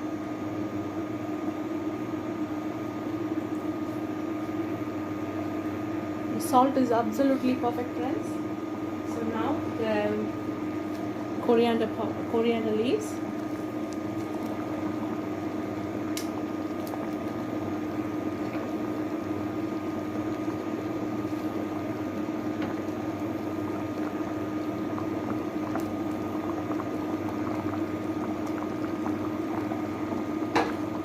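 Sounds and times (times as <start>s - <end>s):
low hum: 8.3s - 31.0s
curry bubbling in a pot: 8.4s - 31.0s.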